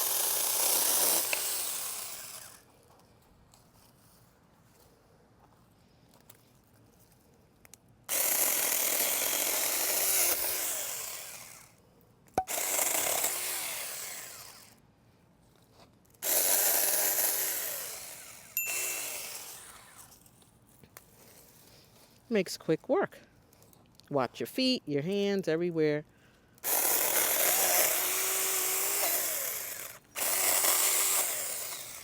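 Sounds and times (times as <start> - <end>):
electric chainsaw cutting branch: 0.0 - 2.7, 8.1 - 11.8, 12.4 - 14.8, 16.2 - 20.3, 26.6 - 32.0.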